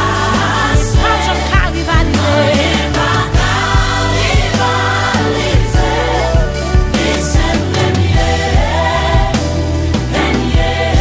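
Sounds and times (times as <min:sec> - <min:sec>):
person singing: 0:00.0 - 0:09.2
steady drum beat: 0:00.0 - 0:11.0
sustained bass notes: 0:00.0 - 0:11.0.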